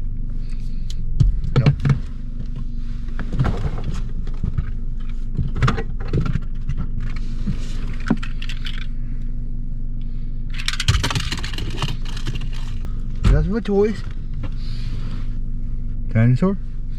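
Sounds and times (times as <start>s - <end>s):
car road and engine rumble: 0.0s - 16.9s
loose toys rattling: 7.9s - 8.9s, 10.5s - 12.9s.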